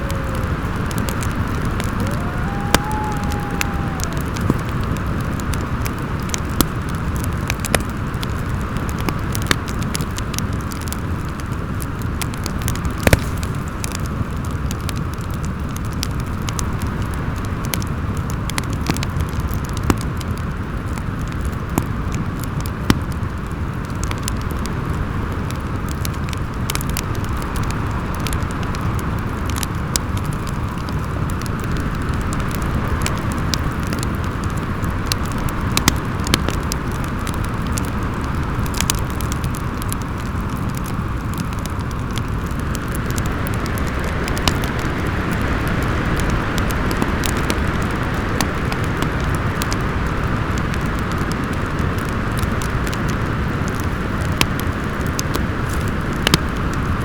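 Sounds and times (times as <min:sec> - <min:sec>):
howling wind: 0:00.0 - 0:08.6
fireplace crackling and popping: 0:00.0 - 0:16.6, 0:29.4 - 0:57.0.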